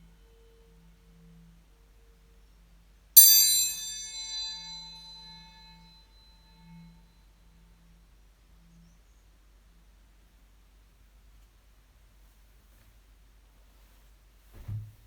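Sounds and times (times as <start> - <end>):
metal singing bowl ringing: 3.2 - 7.1.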